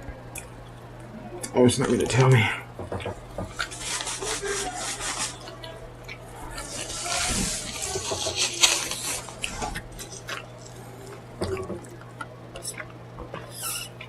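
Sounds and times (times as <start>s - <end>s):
wet chewing and smacking: 5.4s - 6.3s, 8.6s - 14.0s.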